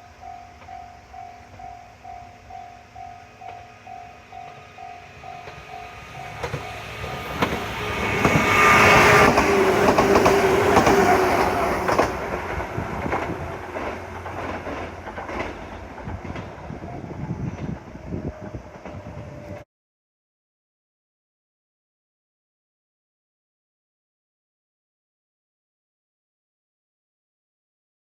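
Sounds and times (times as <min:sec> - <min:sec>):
train wheels clattering: 0:03.0 - 0:18.0.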